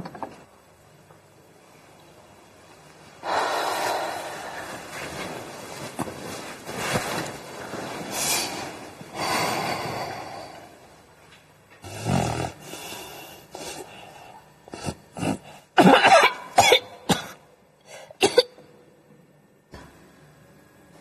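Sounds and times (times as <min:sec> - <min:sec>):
person snoring: 0:11.8 - 0:15.7
sharp coughs and splutters: 0:14.8 - 0:17.4.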